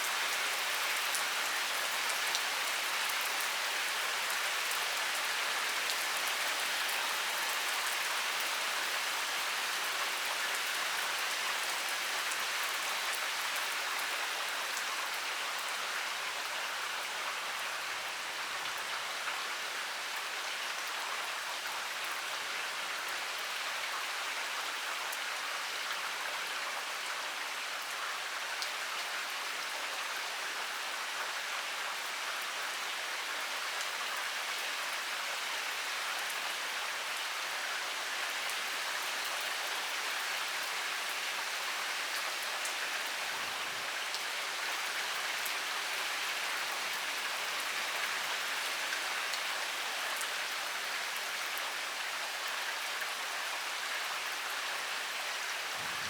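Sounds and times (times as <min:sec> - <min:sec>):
heavy rain pouring: 0:55.6 - 0:56.0.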